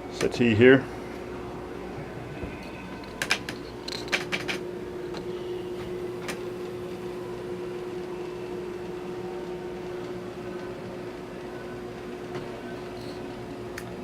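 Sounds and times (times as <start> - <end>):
steady mechanical hum: 0.0 - 14.0
sharp clicks and creaks: 2.6 - 5.2.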